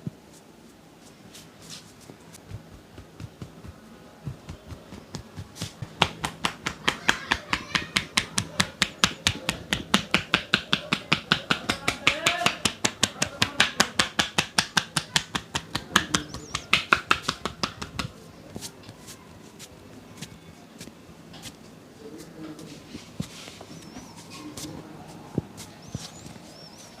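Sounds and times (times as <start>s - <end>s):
hands slapping body in massage: 1.4s - 21.6s.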